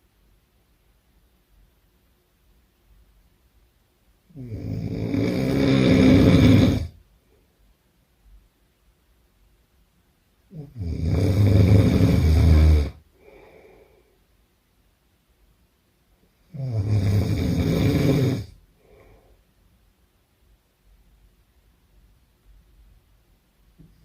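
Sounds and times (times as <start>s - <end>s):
person snoring: 4.3s - 7.0s, 10.5s - 14.1s, 16.5s - 19.3s
soft breath out: 13.1s - 14.3s, 18.7s - 19.5s.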